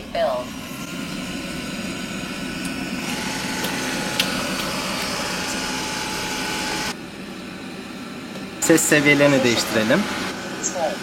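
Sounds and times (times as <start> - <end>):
robot vacuum motor hum: 0.0 - 7.0, 8.6 - 11.0.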